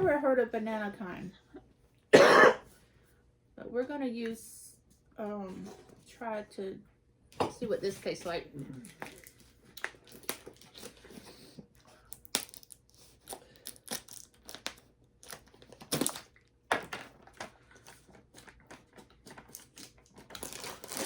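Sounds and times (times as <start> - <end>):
snack packet crinkling and tearing: 8.9 - 21.0.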